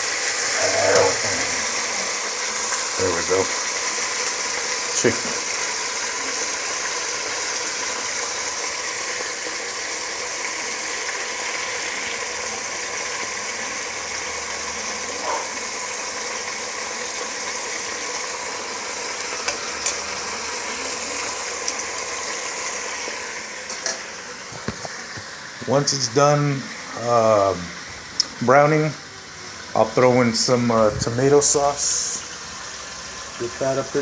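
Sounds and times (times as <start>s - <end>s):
chicken sizzling in hot oil: 0.0s - 34.0s.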